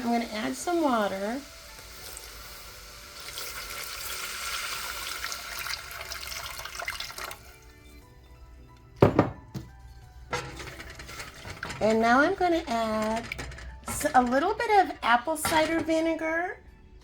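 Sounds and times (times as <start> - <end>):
water pouring into a pot: 0.0 - 7.7.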